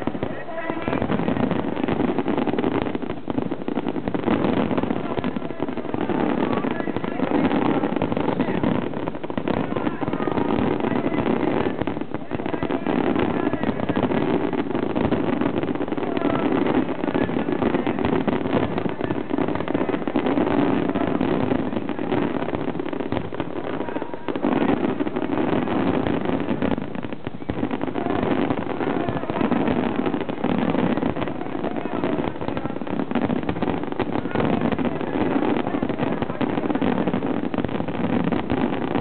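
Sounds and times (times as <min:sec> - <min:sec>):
fireworks crackling: 0:00.0 - 0:39.0.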